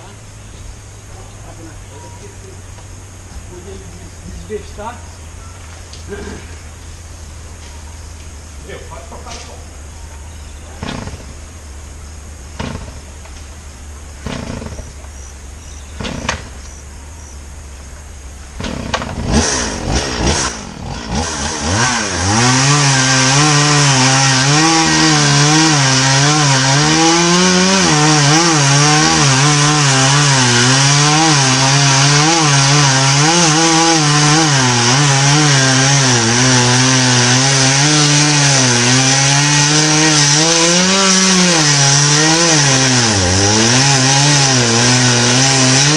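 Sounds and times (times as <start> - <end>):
chainsaw cutting tree trunk: 10.8 - 11.4, 12.6 - 13.4, 14.2 - 15.2, 15.9 - 16.8, 18.5 - 45.9.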